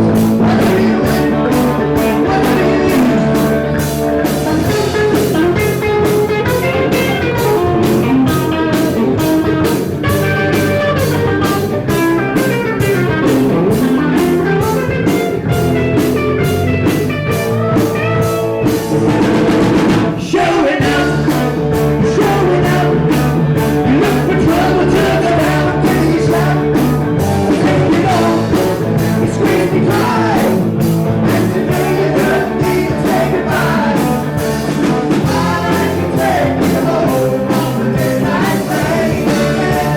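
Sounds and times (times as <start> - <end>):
person singing: 0.0 - 3.8, 20.1 - 39.9
drum kit beat: 0.0 - 39.9
electric guitar: 0.0 - 39.9
live rock band playing: 0.0 - 39.9.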